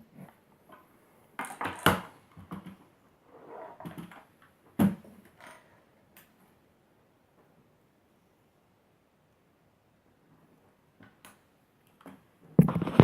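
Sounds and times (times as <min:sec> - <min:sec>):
hard plastic knocks and clatter: 0:12.6 - 0:13.0.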